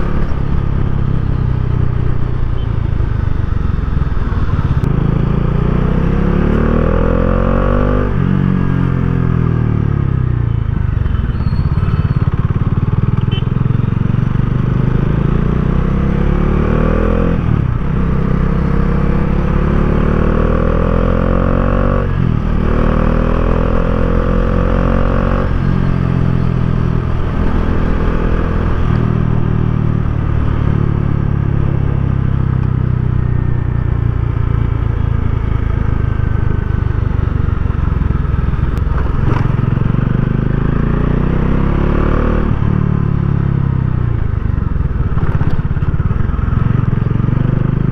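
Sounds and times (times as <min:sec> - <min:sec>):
motorcycle engine accelerating: 0:00.0 - 0:47.9.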